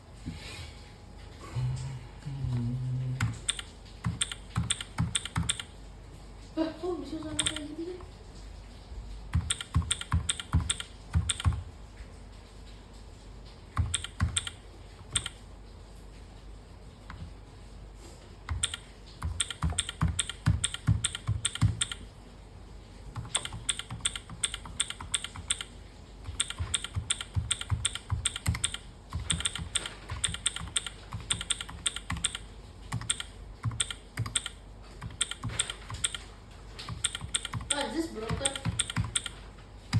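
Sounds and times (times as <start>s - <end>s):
mechanical keyboard typing: 3.2s - 5.8s, 7.2s - 8.1s, 9.3s - 12.8s, 13.5s - 15.5s, 18.4s - 22.2s, 23.1s - 39.9s.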